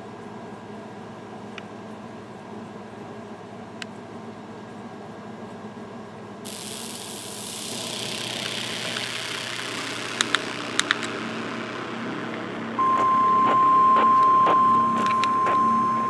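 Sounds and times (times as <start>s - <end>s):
short clicks: 6.5s - 12.8s
low steady hum: 6.5s - 16.0s
radio static hiss: 6.5s - 16.0s.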